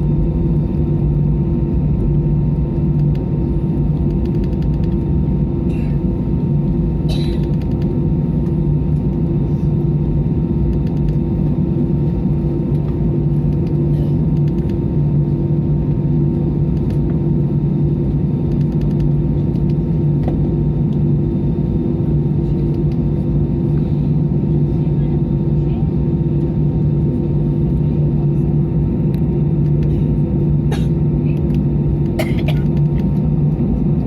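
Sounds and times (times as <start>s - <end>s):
jet engine cabin drone: 0.0s - 34.0s
low cabin hum: 0.0s - 34.0s.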